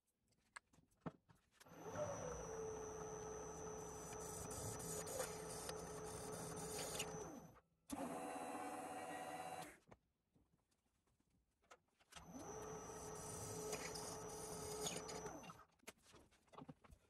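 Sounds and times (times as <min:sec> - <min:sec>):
machine tool electric motor: 0:01.7 - 0:09.7, 0:12.2 - 0:15.6.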